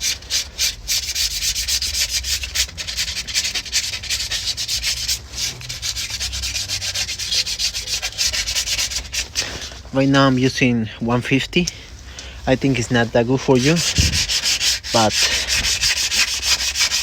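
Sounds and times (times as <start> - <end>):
sandpaper rubbing: 0.0 - 9.8, 12.6 - 17.0.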